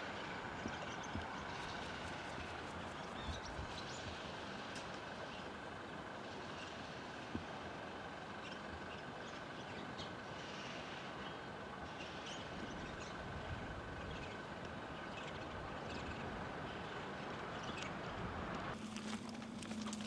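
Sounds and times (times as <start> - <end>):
distant traffic: 0.0 - 20.0
small birds chirping: 0.5 - 4.2, 8.4 - 18.2.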